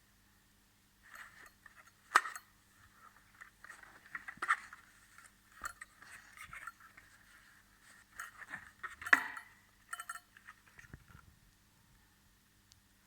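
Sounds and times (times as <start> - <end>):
packaging rustling and scraping: 1.1 - 9.1.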